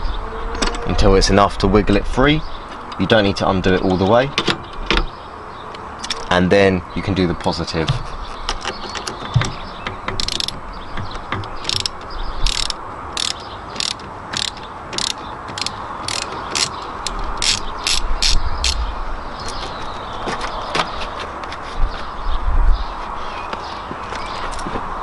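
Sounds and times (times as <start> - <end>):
ratchet clicking: 10.1 - 18.8.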